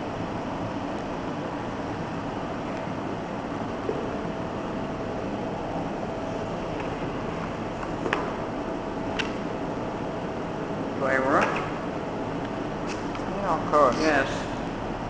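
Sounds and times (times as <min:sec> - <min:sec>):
mechanical hum and hiss: 0:00.0 - 0:15.0.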